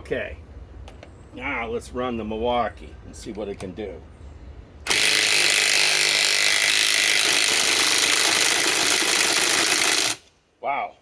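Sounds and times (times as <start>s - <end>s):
impact wrench hammering: 4.9s - 10.2s.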